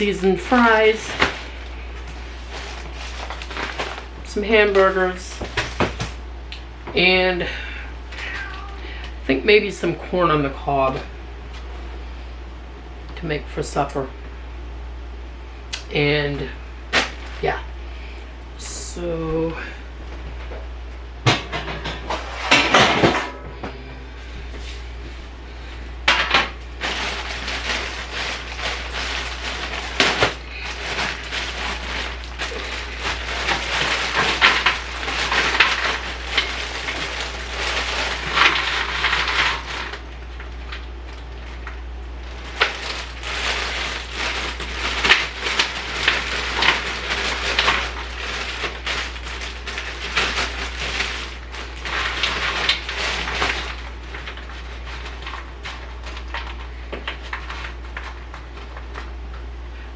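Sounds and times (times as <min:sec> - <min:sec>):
fries pouring onto baking sheet: 0:26.8 - 0:40.0, 0:42.3 - 0:55.4.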